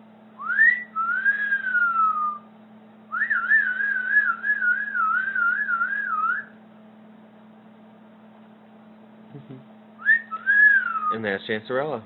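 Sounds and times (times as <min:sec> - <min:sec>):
steady low hum: 0:00.0 - 0:12.0
warbling whistle: 0:00.4 - 0:02.5, 0:03.1 - 0:06.6, 0:10.0 - 0:11.2
whistling glide: 0:00.4 - 0:02.5, 0:03.1 - 0:06.6, 0:10.0 - 0:11.2.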